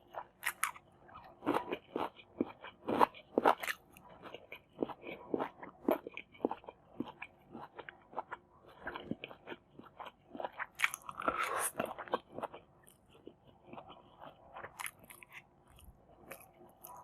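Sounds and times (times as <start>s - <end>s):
moist chewing clicks: 0.0s - 17.0s
crisp crunching bites: 0.4s - 0.8s, 10.6s - 12.2s.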